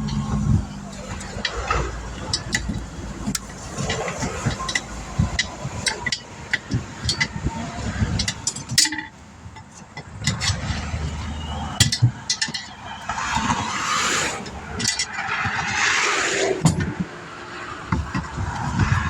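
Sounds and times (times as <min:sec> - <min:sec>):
metal tools clinking: 0:00.0 - 0:13.6
road traffic rumbling: 0:00.0 - 0:19.0.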